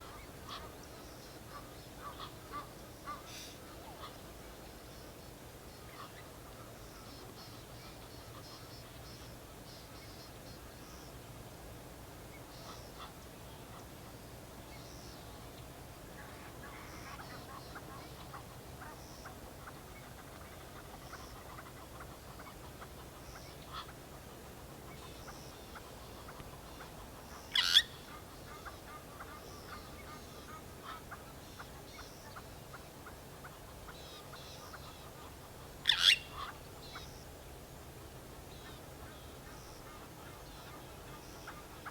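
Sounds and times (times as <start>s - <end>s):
starling loud calls: 27.5s - 28.0s, 35.8s - 36.5s.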